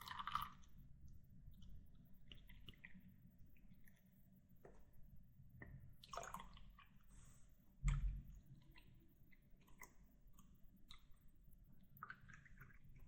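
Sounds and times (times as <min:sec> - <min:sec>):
dull low thump: 0:07.8 - 0:08.4.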